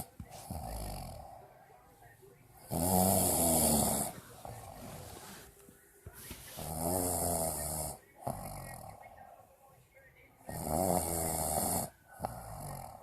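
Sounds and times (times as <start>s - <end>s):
person snoring: 0.0s - 1.5s, 2.7s - 5.4s, 6.6s - 9.0s, 10.6s - 13.0s
soft breathing: 0.0s - 10.1s.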